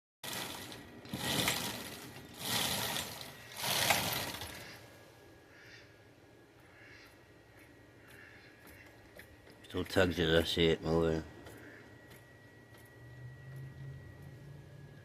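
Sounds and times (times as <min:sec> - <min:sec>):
welding arc crackling: 0:00.2 - 0:04.8.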